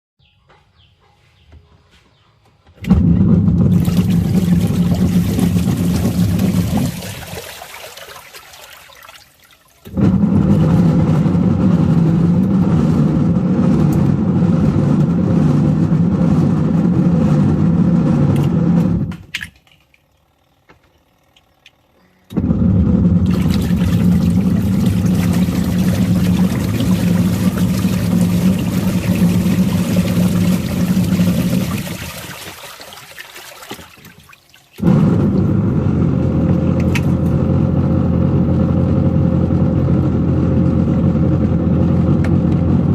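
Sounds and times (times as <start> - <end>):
washing machine water churning: 2.8 - 37.9.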